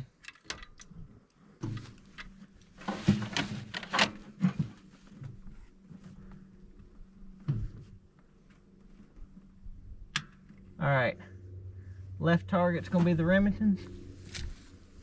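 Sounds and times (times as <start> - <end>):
rustling and clacking: 1.6 - 6.8.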